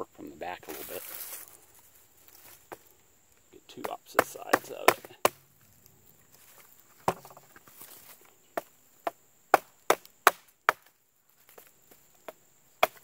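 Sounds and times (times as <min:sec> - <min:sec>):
knife blade striking wood: 0:03.8 - 0:05.4.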